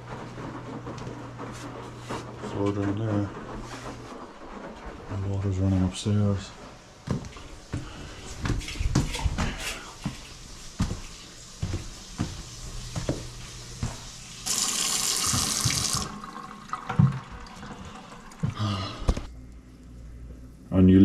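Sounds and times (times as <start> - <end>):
water running from a tap: 10.0 - 18.8.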